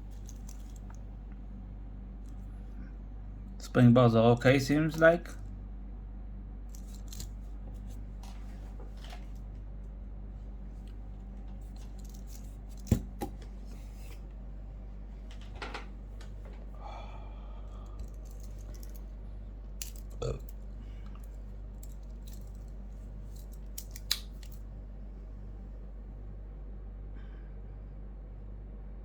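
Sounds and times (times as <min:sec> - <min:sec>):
metal bracelet clicks and clinks: 0:00.1 - 0:01.0, 0:06.7 - 0:07.3, 0:18.0 - 0:19.0, 0:19.8 - 0:20.6, 0:21.2 - 0:24.6.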